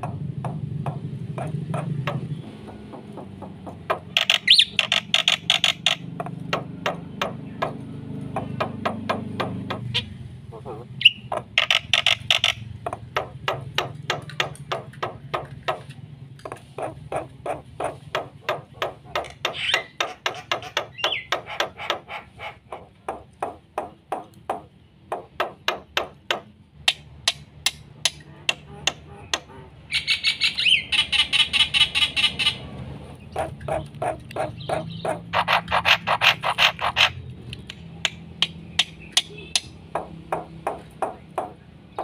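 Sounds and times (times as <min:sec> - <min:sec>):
starling singing clicks and whistles: 0:04.1 - 0:07.3, 0:11.0 - 0:13.0, 0:19.2 - 0:22.0, 0:26.8 - 0:32.6, 0:33.2 - 0:39.8.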